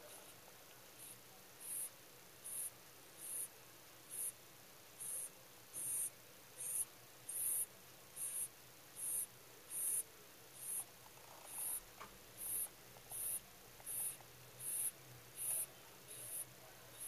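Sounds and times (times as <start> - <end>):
rabbit snoring whistle: 8.2 - 11.8.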